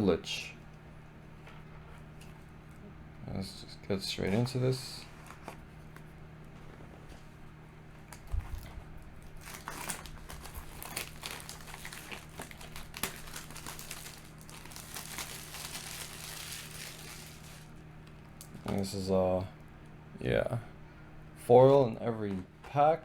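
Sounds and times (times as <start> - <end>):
plastic wrapping crinkling: 8.1 - 18.8.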